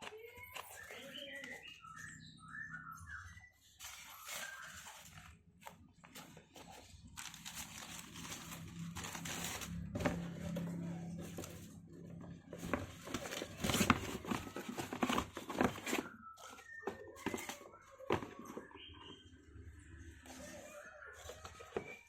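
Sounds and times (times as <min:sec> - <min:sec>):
paper packaging crinkling: 0:03.8 - 0:11.8, 0:12.5 - 0:18.7.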